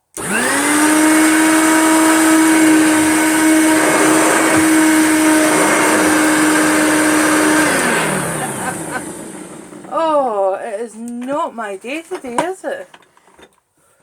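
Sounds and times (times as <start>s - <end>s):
vacuum cleaner motor hum: 0.2s - 10.1s.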